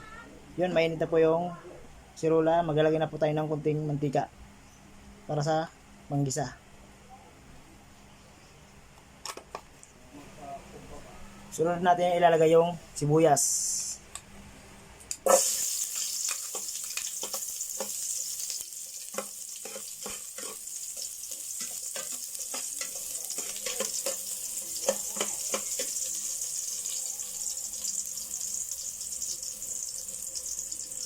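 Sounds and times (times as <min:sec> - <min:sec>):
onion sizzling in oil: 0:15.3 - 0:31.0.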